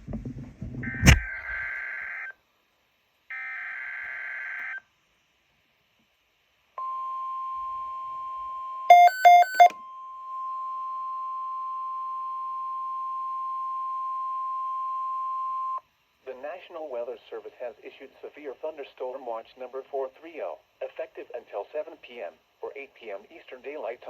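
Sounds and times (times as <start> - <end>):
loud quick beeps: 8.9 - 9.8
steady warning alarm tone: 8.9 - 9.8.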